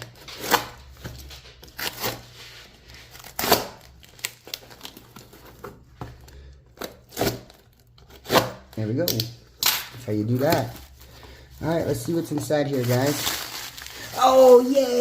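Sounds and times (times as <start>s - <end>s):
packaging tearing and crinkling: 3.0s - 5.8s, 11.9s - 15.0s.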